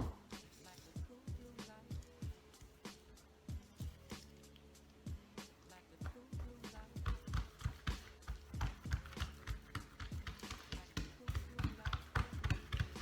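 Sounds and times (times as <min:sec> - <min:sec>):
hands slapping dough on worktop: 0:06.0 - 0:13.0.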